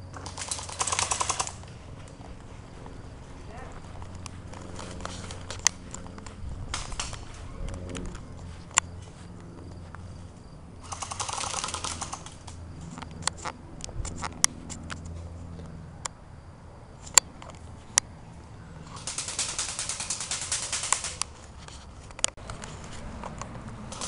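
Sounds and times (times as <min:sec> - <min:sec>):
airsoft gun automatic fire: 0:00.2 - 0:01.6, 0:10.8 - 0:12.5, 0:18.9 - 0:21.2.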